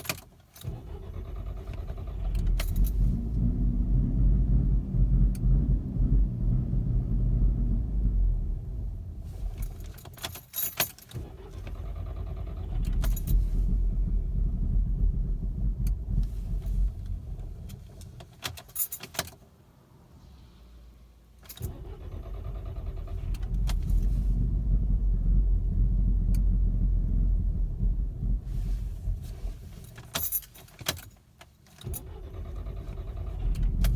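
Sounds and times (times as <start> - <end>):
car engine rough idle: 0.6 - 10.3, 11.2 - 18.4, 21.6 - 30.6, 31.8 - 33.9
keys jangling: 9.8 - 11.2.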